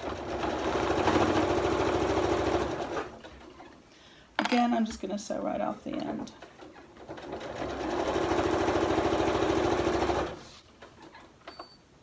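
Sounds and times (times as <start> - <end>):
sewing machine stitching: 0.0 - 3.7, 6.2 - 11.4.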